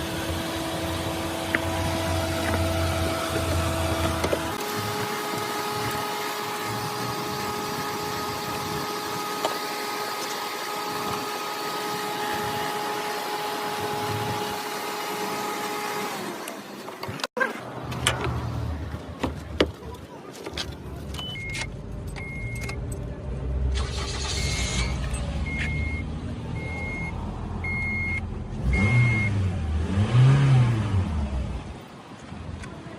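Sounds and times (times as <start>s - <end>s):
car hum: 0.0s - 32.9s
high warning beeps: 21.2s - 22.9s, 24.2s - 28.2s
car engine revving: 23.3s - 31.8s.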